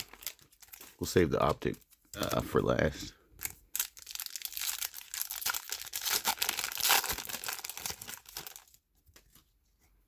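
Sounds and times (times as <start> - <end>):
foil wrapper tearing and crinkling: 0.0 - 2.4, 3.4 - 8.8.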